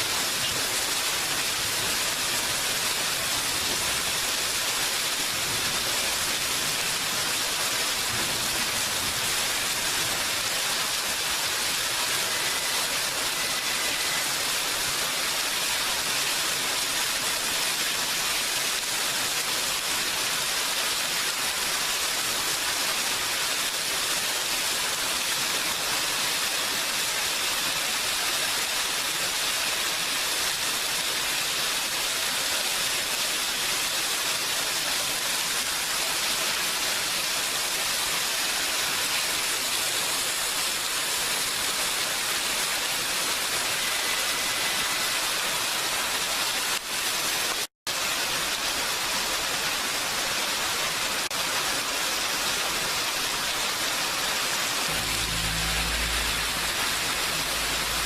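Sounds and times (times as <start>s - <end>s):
steady rain: 0.0s - 58.0s.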